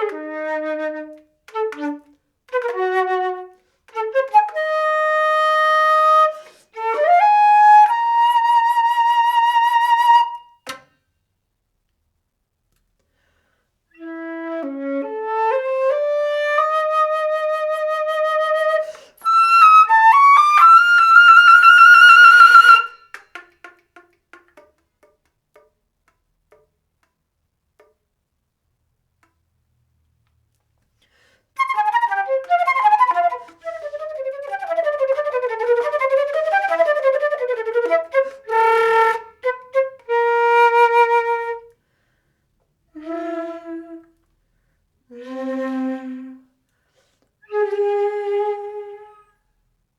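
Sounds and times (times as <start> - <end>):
solo flute playing: 0.0 - 10.7, 14.0 - 23.2, 31.6 - 41.8, 42.9 - 44.2, 45.1 - 46.6, 47.4 - 49.4.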